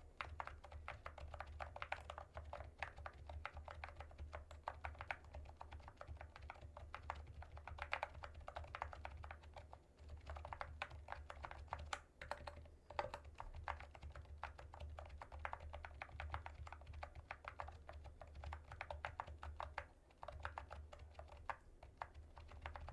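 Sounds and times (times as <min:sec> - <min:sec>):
fast typing on a keyboard: 0:00.0 - 0:22.9.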